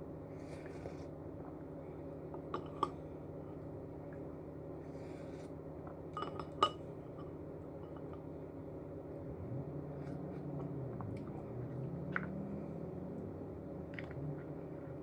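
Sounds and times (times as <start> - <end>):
utensils clinking against bowl: 6.1 - 8.2.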